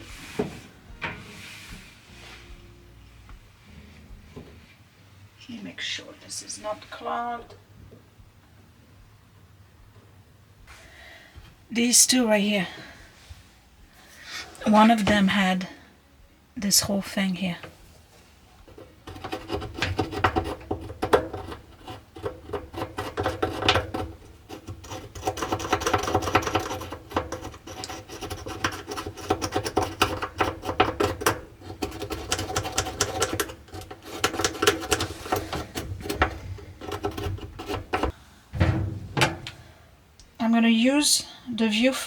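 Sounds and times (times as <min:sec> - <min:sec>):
scraping and brushing lint: 0:00.0 - 0:02.6, 0:21.6 - 0:38.2.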